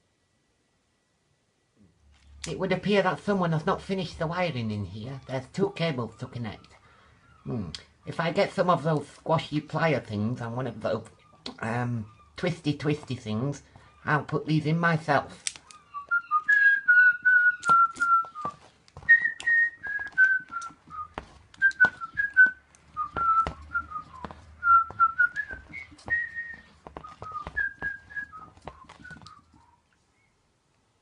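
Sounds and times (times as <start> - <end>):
handling clicks and taps: 15.4 - 15.8
person whistling a tune: 15.9 - 29.5.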